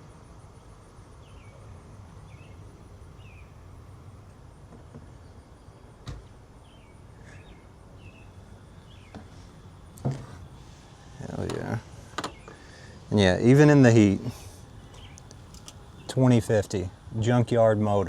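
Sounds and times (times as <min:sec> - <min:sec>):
low steady background rumble: 0:00.0 - 0:18.0
bird chirping: 0:01.1 - 0:03.7, 0:05.0 - 0:09.4, 0:12.2 - 0:16.3.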